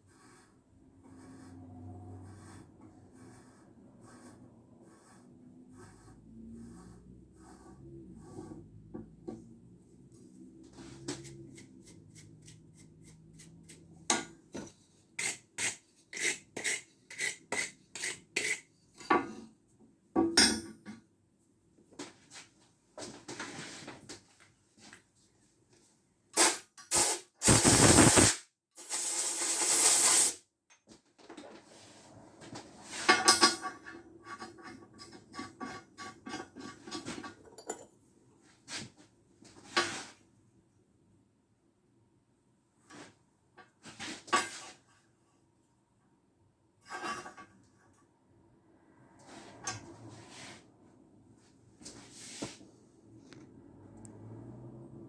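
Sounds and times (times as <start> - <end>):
loud rushing hiss: 26.4 - 30.4.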